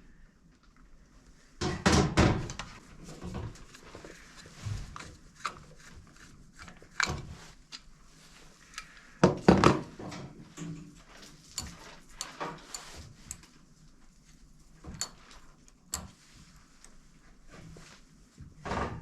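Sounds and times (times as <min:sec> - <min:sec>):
tools and metal parts clicking: 0:10.6 - 0:13.4, 0:14.9 - 0:15.2.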